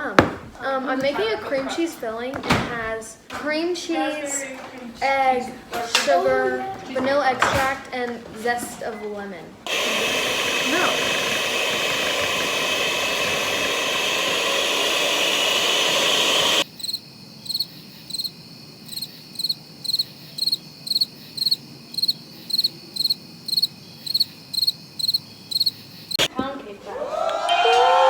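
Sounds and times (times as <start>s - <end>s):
electric mixer whirring: 9.7s - 16.6s
cricket chirping: 16.6s - 26.3s.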